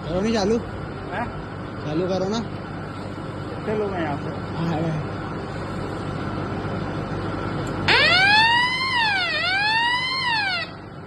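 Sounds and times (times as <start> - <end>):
steady background noise: 0.0 - 11.0
fire alarm siren wailing: 7.9 - 10.9.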